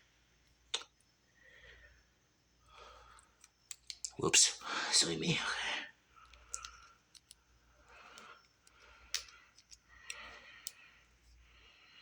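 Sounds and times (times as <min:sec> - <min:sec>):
batteries clicking and rattling: 0:06.2 - 0:07.4, 0:08.0 - 0:10.8.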